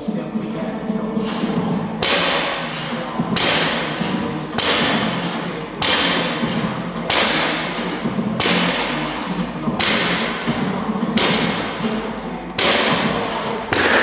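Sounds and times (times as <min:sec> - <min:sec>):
workout machine thuds with hiss: 0:01.2 - 0:11.8.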